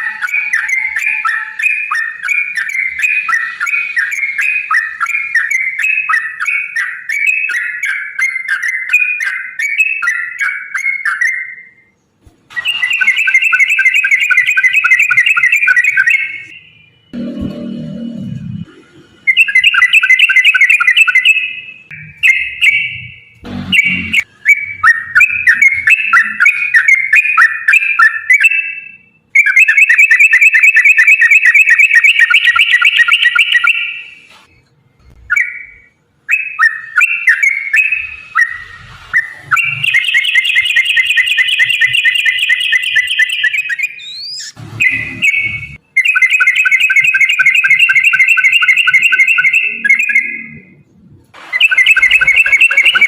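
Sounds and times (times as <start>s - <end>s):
bird singing bubbling phrases: 12.6s - 16.6s, 19.3s - 33.8s, 35.3s - 50.7s, 51.6s - 53.0s
bird rolling trills: 51.5s - 53.0s.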